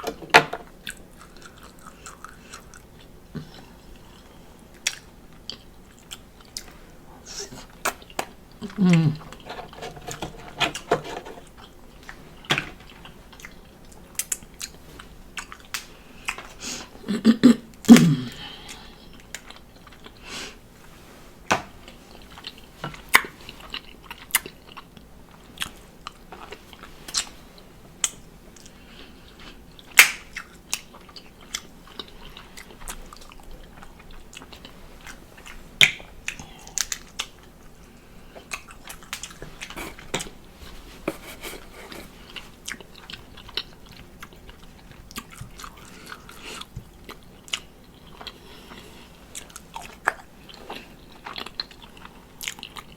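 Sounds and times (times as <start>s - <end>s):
person chewing seafood: 0.0s - 17.0s, 17.8s - 20.6s, 21.8s - 52.9s.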